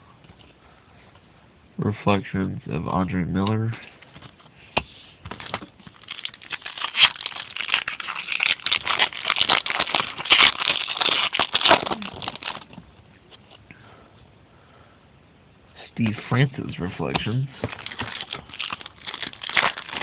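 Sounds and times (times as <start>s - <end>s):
card pack wrapper crinkling: 5.3s - 12.8s, 17.2s - 20.0s.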